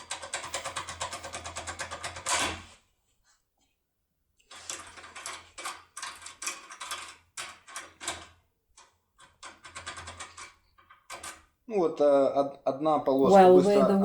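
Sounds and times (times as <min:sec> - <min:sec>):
lockpick clicking and scraping in lock: 0:09.2 - 0:11.4.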